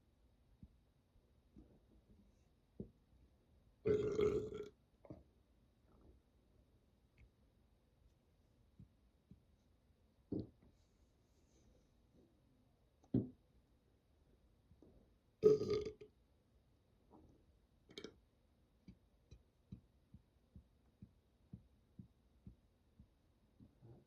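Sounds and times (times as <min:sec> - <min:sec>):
person burping: 0:03.8 - 0:04.8, 0:15.4 - 0:16.0.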